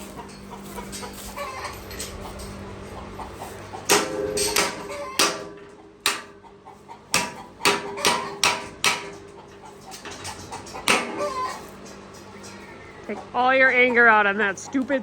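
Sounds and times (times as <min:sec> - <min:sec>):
metal gate clanging: 0:00.2 - 0:02.7, 0:03.9 - 0:06.5, 0:07.2 - 0:12.7.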